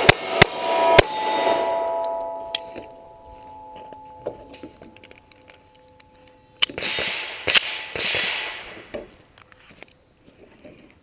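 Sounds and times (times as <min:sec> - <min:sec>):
pistol shots: 0:06.6 - 0:08.9.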